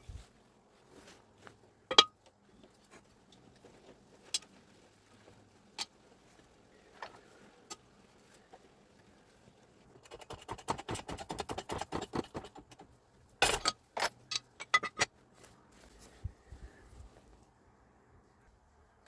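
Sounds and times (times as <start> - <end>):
tools and parts clicking: 13.4 - 15.2.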